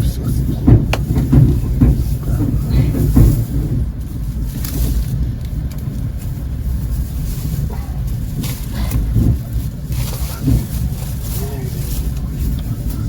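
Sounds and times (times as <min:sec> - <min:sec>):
train rumbling on rails: 0:00.0 - 0:13.0
faint knocks: 0:00.4 - 0:04.0.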